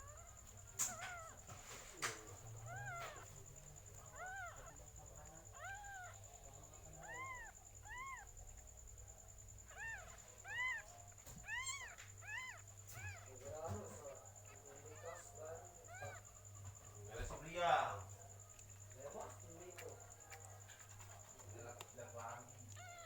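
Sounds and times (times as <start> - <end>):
cat mewing: 0.0 - 8.9, 9.6 - 17.4, 22.0 - 23.0
faint clicks: 0.2 - 6.2, 18.2 - 23.0.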